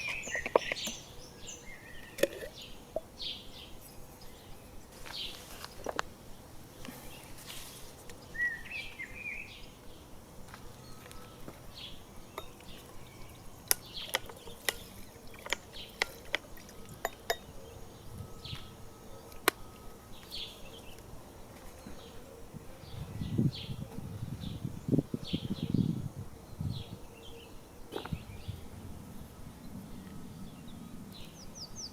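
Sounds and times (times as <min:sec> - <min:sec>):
small bird chirps: 0:00.0 - 0:28.8.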